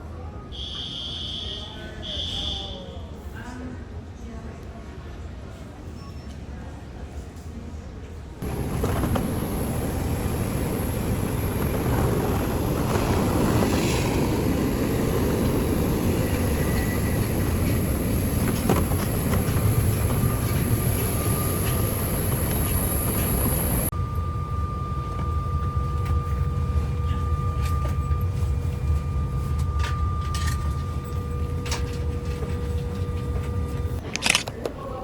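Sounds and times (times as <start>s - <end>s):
vehicle rumbling in motion: 8.4s - 24.2s
thin high whine: 8.4s - 34.0s.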